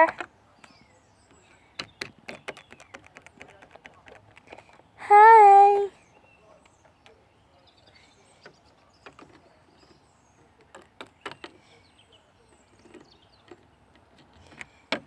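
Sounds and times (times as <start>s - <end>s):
plastic toy figures clicking: 1.8s - 4.8s.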